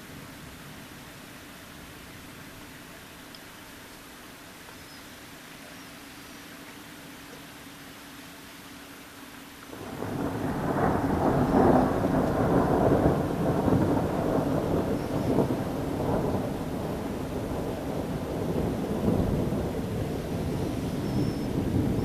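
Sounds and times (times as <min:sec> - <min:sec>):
thunder rumbling: 0:09.7 - 0:22.0.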